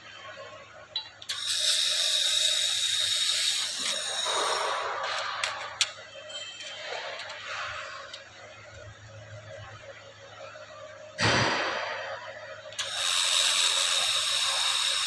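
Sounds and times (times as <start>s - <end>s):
laser welder hissing: 1.3s - 5.4s, 12.8s - 15.0s.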